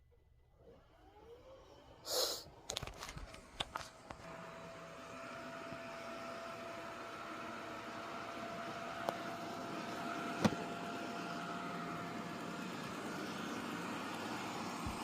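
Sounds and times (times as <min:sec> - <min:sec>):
robot vacuum whirring: 0:04.2 - 0:15.0.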